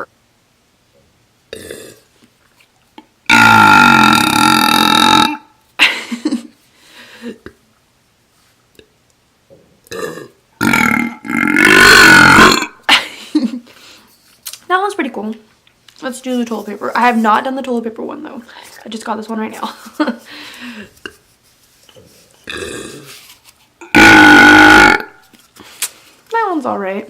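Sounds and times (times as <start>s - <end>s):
woman burping: 1.5s - 2.0s, 3.3s - 5.6s, 9.9s - 13.1s, 22.5s - 23.1s, 23.8s - 25.2s.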